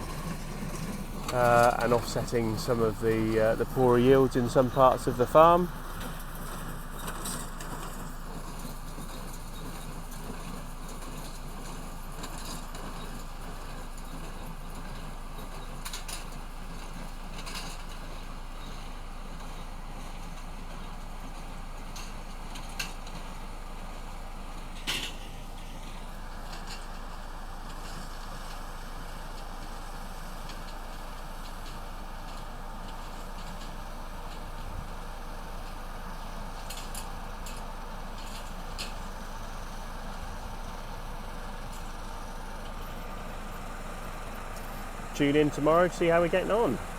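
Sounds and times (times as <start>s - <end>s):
harvest machinery running: 0.0s - 46.9s.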